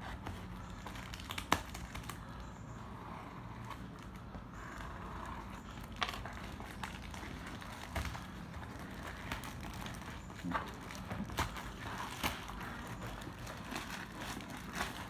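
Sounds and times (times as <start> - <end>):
packaging rustling: 0.1 - 2.5, 5.5 - 15.0.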